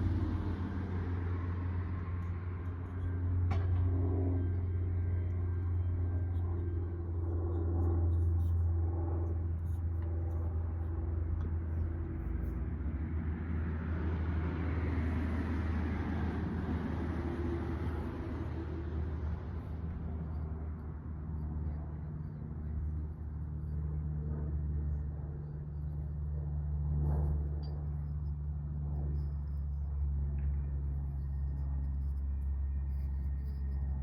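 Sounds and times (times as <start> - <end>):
steady low rumble: 0.0 - 34.0.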